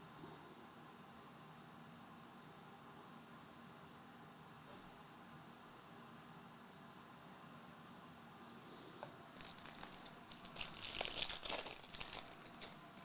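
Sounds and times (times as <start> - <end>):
foil wrapper tearing and crinkling: 9.4 - 13.0.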